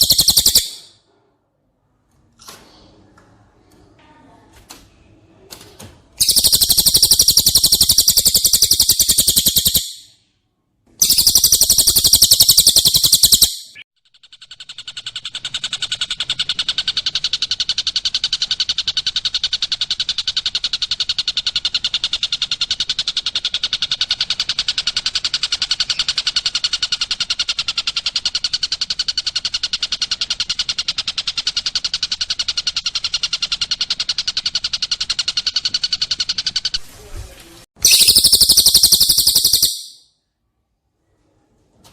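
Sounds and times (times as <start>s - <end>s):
bird chattering: 0.0s - 0.9s, 6.2s - 10.1s, 11.0s - 36.8s, 37.8s - 40.0s
fast dense bird trill: 0.0s - 0.9s, 6.2s - 10.1s, 11.0s - 36.8s, 37.8s - 40.1s.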